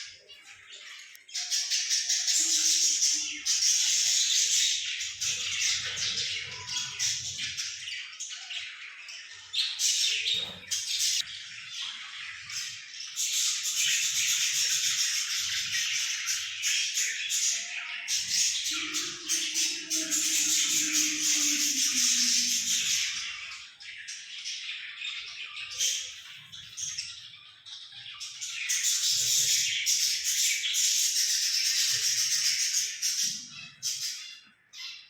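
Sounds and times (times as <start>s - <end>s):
parrot squawking: 18.2s - 23.6s.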